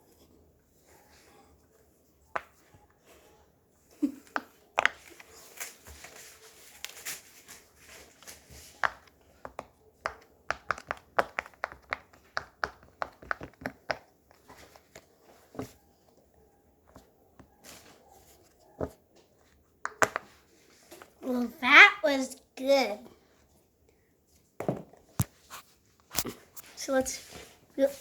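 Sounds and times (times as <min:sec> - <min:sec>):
small objects clicking and tapping: 0:04.3 - 0:05.3, 0:08.8 - 0:15.0
crinkling: 0:04.8 - 0:09.7.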